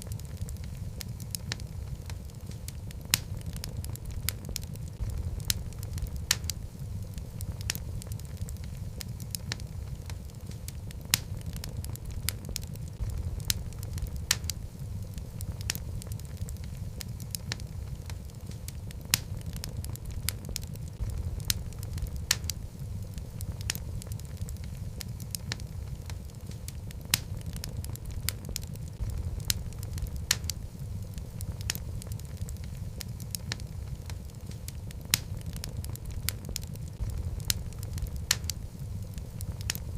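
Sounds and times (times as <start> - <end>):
fire crackling and popping: 0.0 - 39.9
fire rumbling: 0.0 - 39.9.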